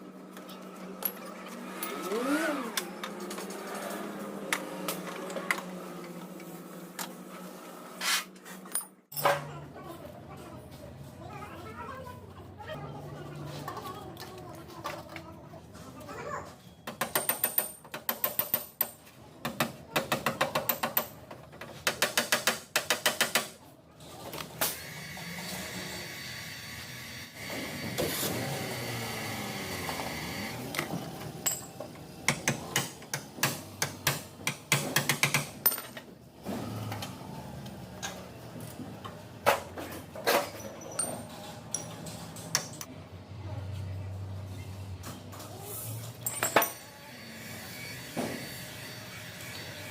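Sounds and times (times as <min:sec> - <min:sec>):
steady tool noise: 0:46.8 - 0:49.9.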